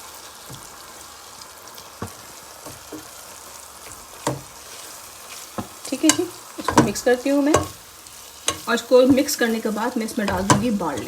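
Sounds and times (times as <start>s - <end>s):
chicken sizzling in a pan: 0.0s - 11.0s
spoon knocking against pan: 4.2s - 4.6s, 5.5s - 7.8s, 8.4s - 11.0s.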